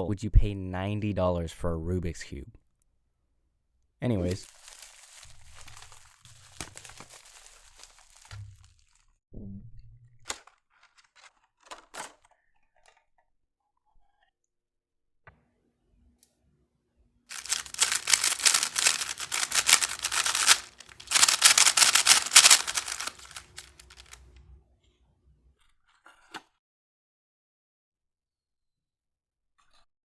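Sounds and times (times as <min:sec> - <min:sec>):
packaging torn and crinkled: 0:04.3 - 0:09.0, 0:17.3 - 0:24.2
faint rustle: 0:17.3 - 0:24.2.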